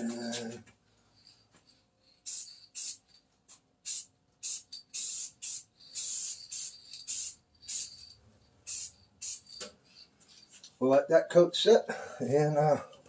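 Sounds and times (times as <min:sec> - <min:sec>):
aerosol can spraying hisses: 0:02.3 - 0:03.0, 0:03.8 - 0:08.0, 0:08.7 - 0:09.6.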